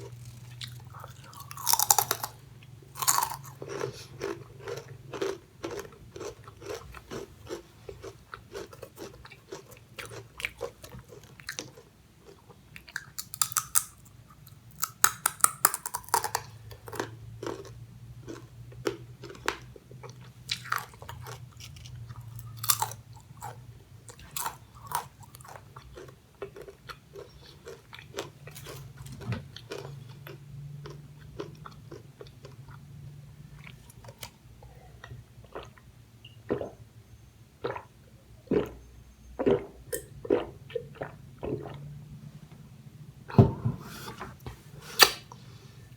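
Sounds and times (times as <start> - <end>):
crunching and chewing chips: 0.0 - 35.8.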